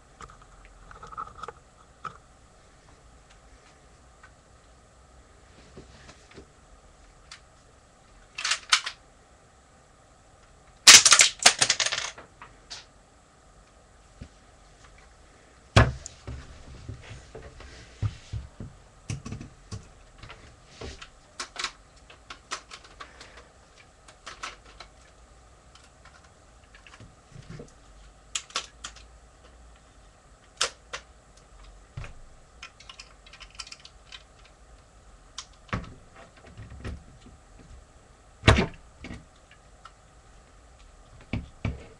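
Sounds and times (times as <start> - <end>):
plastic toy parts clicking: 8.4 - 9.0, 21.4 - 23.4, 24.1 - 25.1, 28.4 - 29.1, 32.6 - 34.6.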